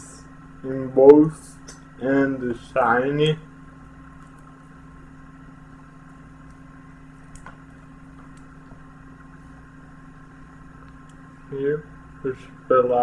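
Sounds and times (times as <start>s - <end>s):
steady electrical hum: 0.0s - 13.0s
faint clicks: 10.5s - 11.2s.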